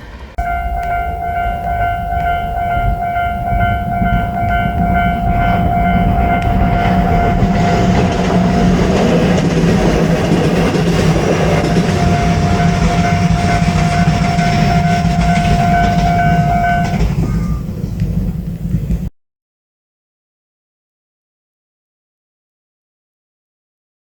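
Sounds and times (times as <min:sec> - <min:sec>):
train wheels clattering over rails: 0:00.0 - 0:19.1
crossing warning bell ringing: 0:00.4 - 0:17.6.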